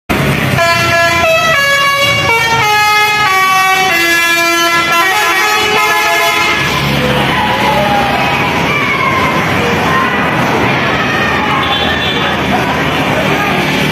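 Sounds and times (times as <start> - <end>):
bus horn playing a melody: 0.6 - 6.8.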